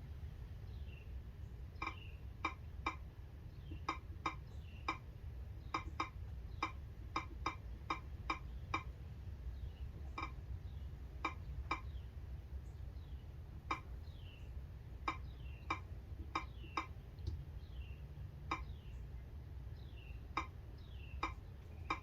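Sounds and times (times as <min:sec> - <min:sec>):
steady low hum: 0:00.0 - 0:22.0
on-screen keyboard clicks: 0:05.7 - 0:08.9.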